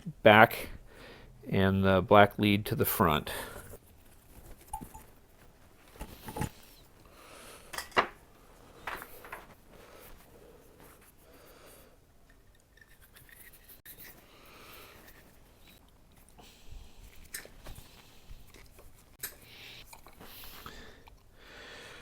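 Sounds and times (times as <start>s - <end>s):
soft rubbing: 3.6s - 7.0s, 8.4s - 11.8s, 12.8s - 20.6s.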